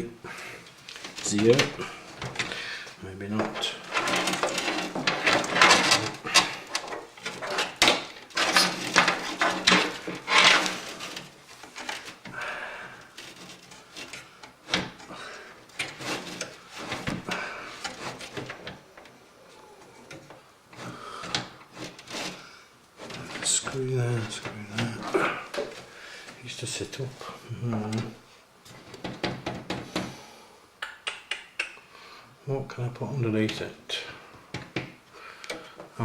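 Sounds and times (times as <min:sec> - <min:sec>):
clicks and scrapes on computer case: 0:03.4 - 0:19.1, 0:20.1 - 0:26.4.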